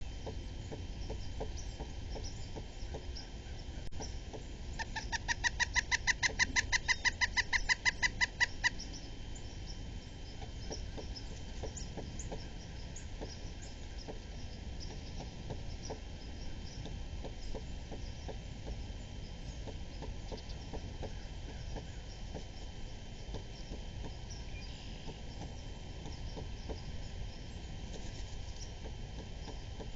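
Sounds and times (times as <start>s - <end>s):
woodpecker calling: 3.2s - 9.5s.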